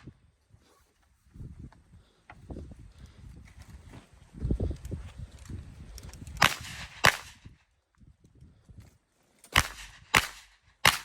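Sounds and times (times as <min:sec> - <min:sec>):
gunshots with echo: 0:06.4 - 0:07.4, 0:09.6 - 0:11.0.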